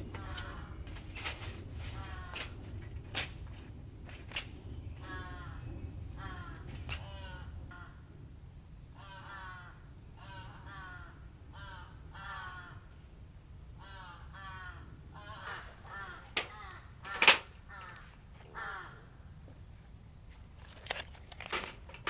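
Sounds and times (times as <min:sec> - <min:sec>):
crows cawing: 0:00.1 - 0:00.8, 0:05.0 - 0:08.0, 0:09.0 - 0:12.9, 0:13.8 - 0:19.3.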